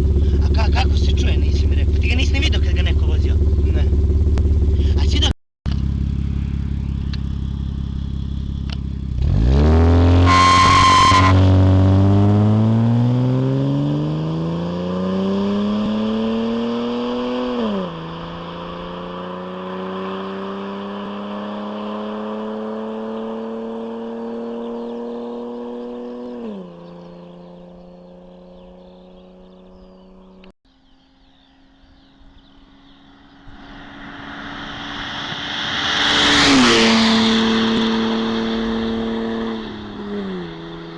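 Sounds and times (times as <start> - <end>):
car engine accelerating: 0.0 - 30.5, 31.2 - 40.9.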